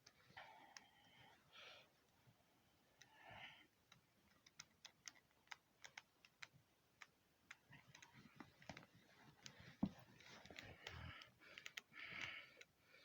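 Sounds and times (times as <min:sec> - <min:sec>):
faint sharp clicks: 0:02.9 - 0:09.6, 0:10.2 - 0:12.8.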